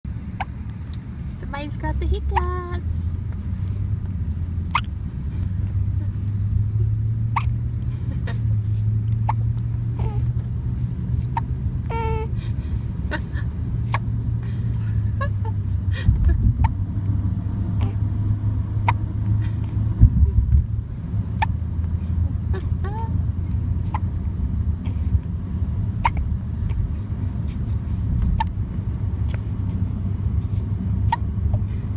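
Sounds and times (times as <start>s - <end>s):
low rumble: 0.1s - 31.9s
baby hiccuping: 7.3s - 7.6s, 9.2s - 10.2s, 26.0s - 26.2s, 31.1s - 31.3s.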